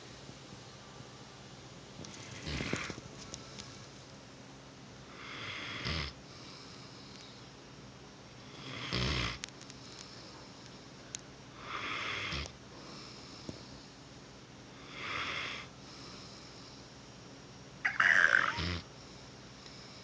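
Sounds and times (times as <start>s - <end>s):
dog snoring: 2.1s - 3.0s, 5.1s - 6.7s, 8.4s - 9.4s, 11.6s - 13.2s, 14.8s - 16.3s, 17.9s - 18.9s.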